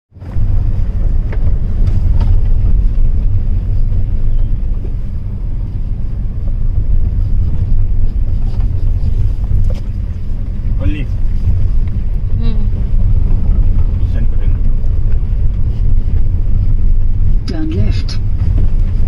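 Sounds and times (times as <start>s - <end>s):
car road and engine rumble: 0.1s - 19.0s.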